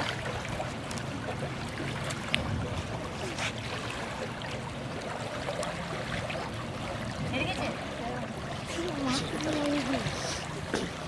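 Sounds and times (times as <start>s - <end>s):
river water rushing: 0.0s - 11.0s
small splashes: 0.0s - 11.0s.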